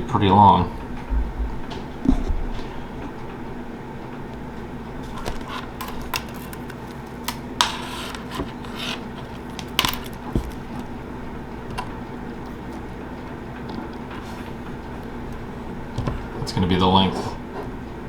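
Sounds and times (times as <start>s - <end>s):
steady low hum: 0.0s - 18.0s
small metal parts clinking: 8.7s - 10.9s.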